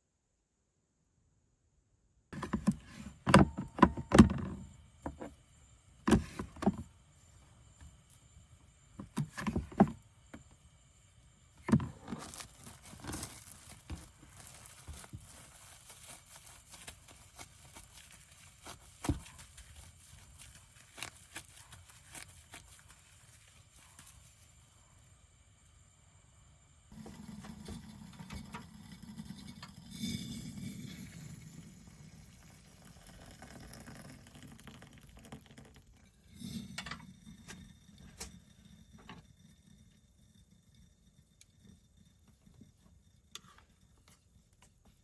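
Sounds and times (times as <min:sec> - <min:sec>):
objects knocking and clattering: 0:02.4 - 0:05.3, 0:06.0 - 0:06.9, 0:09.0 - 0:10.5, 0:11.6 - 0:15.6
rustling: 0:11.6 - 0:25.0.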